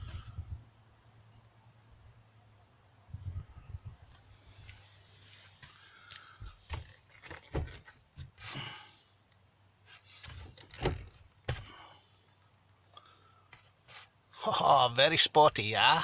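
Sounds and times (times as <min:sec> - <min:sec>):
thunks and clicks inside car: 0:06.4 - 0:08.5, 0:10.2 - 0:11.7.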